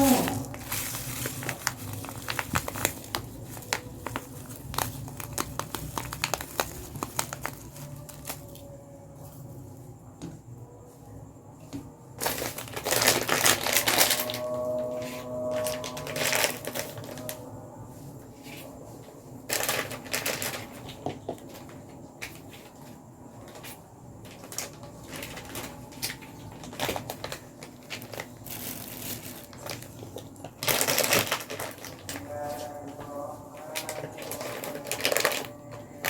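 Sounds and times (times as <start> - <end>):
rustling and scraping: 0.0 - 10.0.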